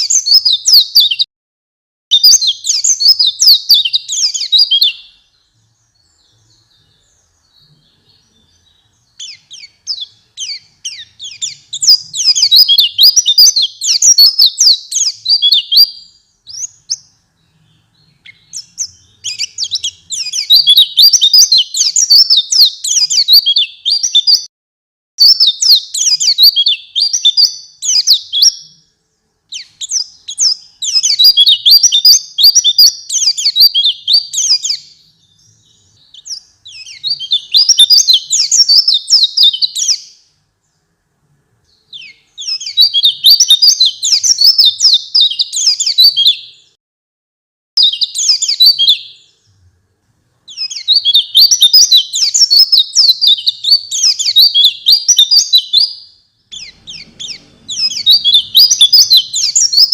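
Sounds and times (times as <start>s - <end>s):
bird twittering warble: 5.8s - 24.4s, 56.5s - 59.9s.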